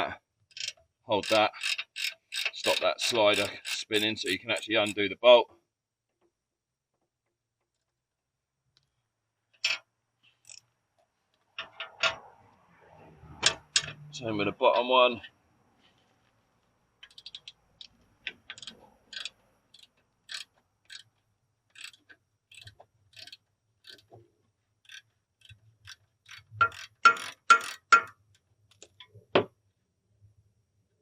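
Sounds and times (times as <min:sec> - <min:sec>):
ratchet wrench clicking: 0:00.5 - 0:05.0, 0:10.4 - 0:10.6, 0:17.0 - 0:21.1, 0:21.7 - 0:24.1, 0:24.9 - 0:28.1.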